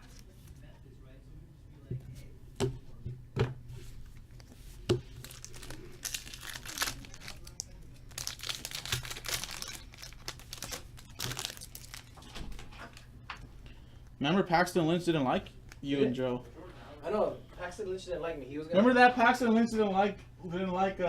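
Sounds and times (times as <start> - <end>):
wrapper crinkling: 4.4 - 13.1
foil pack tearing: 5.2 - 12.4.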